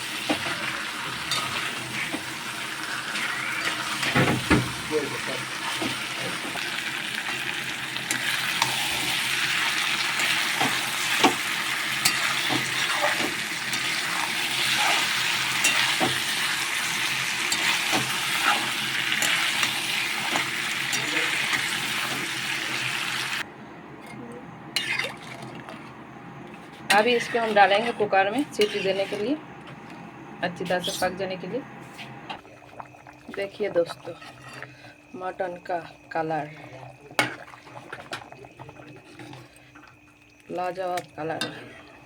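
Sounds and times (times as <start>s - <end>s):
meat sizzling in a pan: 0.0s - 23.4s
spatula clicking and scraping pan: 12.0s - 16.8s, 17.4s - 21.7s, 26.5s - 30.0s.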